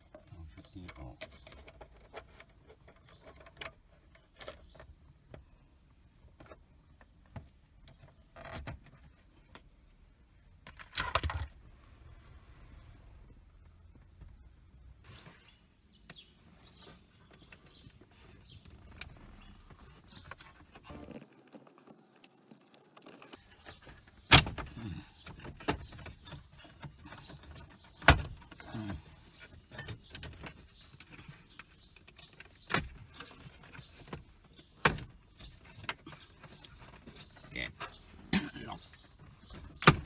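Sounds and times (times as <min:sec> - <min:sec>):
plastic trim and tools rattling: 0:20.2 - 0:23.6.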